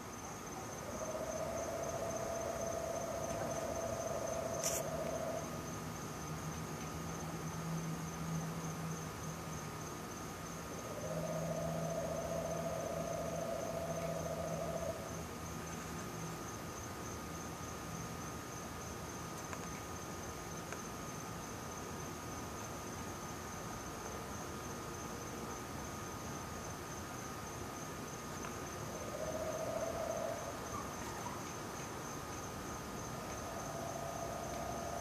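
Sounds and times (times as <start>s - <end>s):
high-pitched insect trill: 0.0s - 35.0s
lower droning trill: 11.0s - 15.4s.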